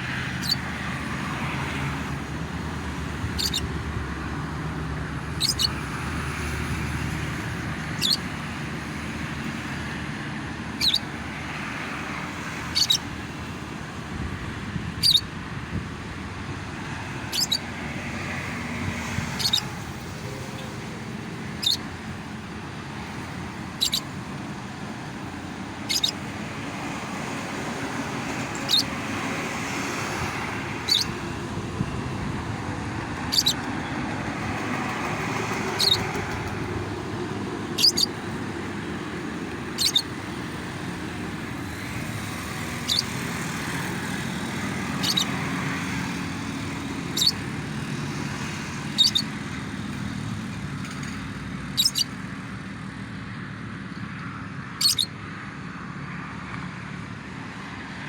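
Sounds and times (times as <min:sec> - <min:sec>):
road traffic noise: 0:00.0 - 0:58.0
bird chirping: 0:00.4 - 0:00.6, 0:03.4 - 0:03.7, 0:05.4 - 0:05.8, 0:08.0 - 0:08.2, 0:10.8 - 0:11.1, 0:12.7 - 0:13.1, 0:15.0 - 0:15.2, 0:17.3 - 0:17.7, 0:19.3 - 0:19.8, 0:21.6 - 0:21.9, 0:23.8 - 0:24.1, 0:25.8 - 0:26.2, 0:28.4 - 0:28.9, 0:30.8 - 0:31.1, 0:33.3 - 0:33.7, 0:35.7 - 0:36.1, 0:37.8 - 0:38.2, 0:39.8 - 0:40.1, 0:42.8 - 0:43.1, 0:45.0 - 0:45.4, 0:47.1 - 0:47.4, 0:48.9 - 0:49.3, 0:51.8 - 0:52.2, 0:54.8 - 0:55.1.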